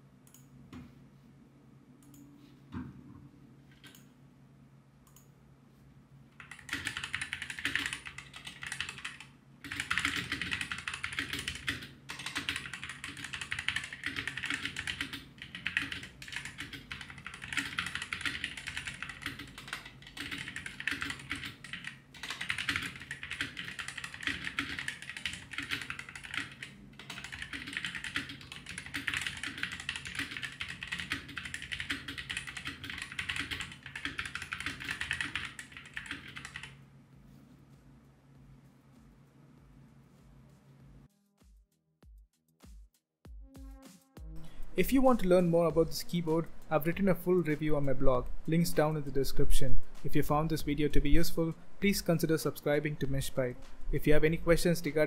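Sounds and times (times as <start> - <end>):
fast typing on mechanical keyboard: 6.4 - 36.8.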